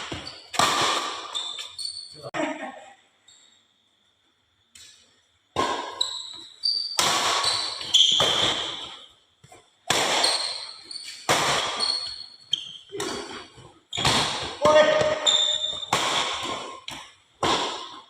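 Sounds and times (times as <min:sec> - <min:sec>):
racket striking shuttlecock: 0:00.0 - 0:01.7, 0:05.6 - 0:06.1, 0:06.9 - 0:09.0, 0:09.8 - 0:12.3, 0:12.9 - 0:18.0
shoe squeaks on court floor: 0:00.1 - 0:00.6, 0:01.2 - 0:02.3, 0:05.9 - 0:09.1, 0:10.1 - 0:14.2, 0:14.8 - 0:15.9.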